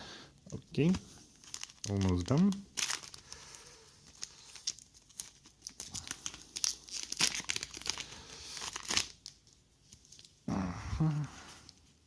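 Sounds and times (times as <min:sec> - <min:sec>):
foil wrapper tearing and crinkling: 0:01.3 - 0:09.4.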